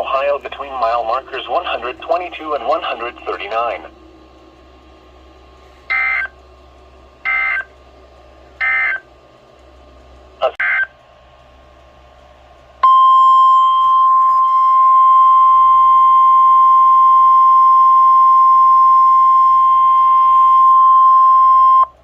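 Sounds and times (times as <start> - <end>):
steady alarm tone: 0.0 - 6.4, 7.2 - 7.8, 8.6 - 9.0, 12.8 - 22.0.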